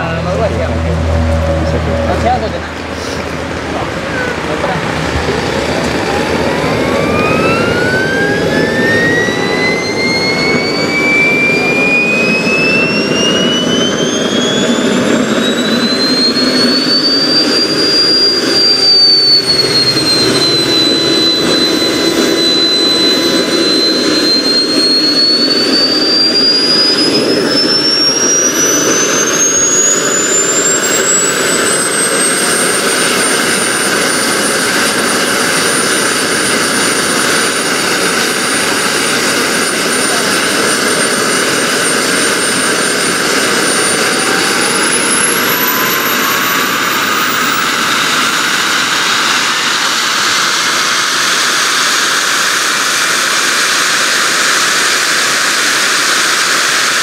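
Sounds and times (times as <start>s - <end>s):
jet turbine whine rising: 0.0s - 57.0s
steady rushing noise: 0.0s - 57.0s.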